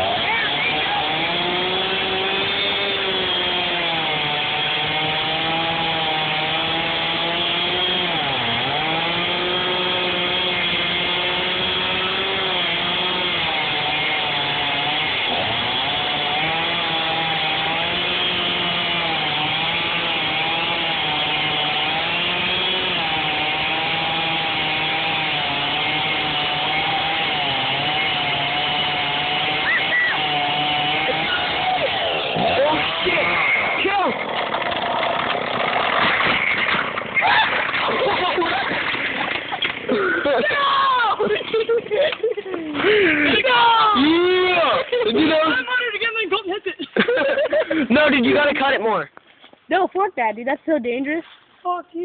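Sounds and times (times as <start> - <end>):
chainsaw cutting tree trunk: 0.0 - 45.8, 47.0 - 48.9.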